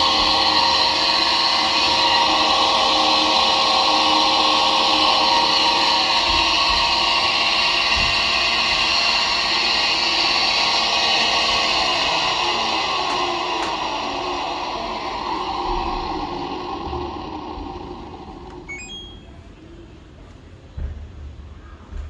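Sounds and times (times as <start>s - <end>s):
dryer fan grinding whine: 0.0s - 19.3s.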